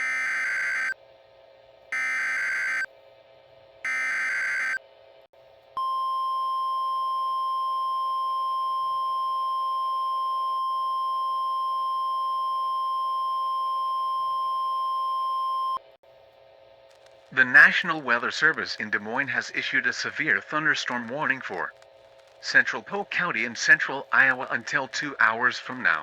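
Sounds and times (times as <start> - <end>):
steady high alert tone: 3.9 - 4.8.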